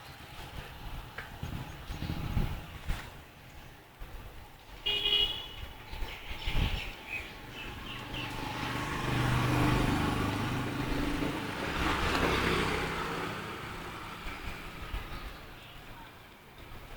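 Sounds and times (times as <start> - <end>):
vehicle passing on road: 6.7 - 16.9.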